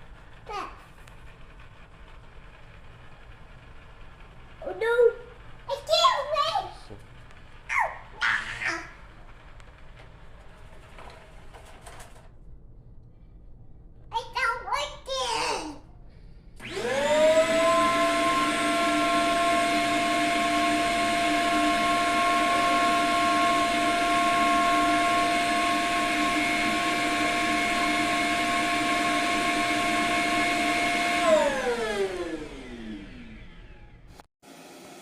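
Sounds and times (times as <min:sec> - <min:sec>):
vacuum suction motor whine: 0:16.6 - 0:35.0.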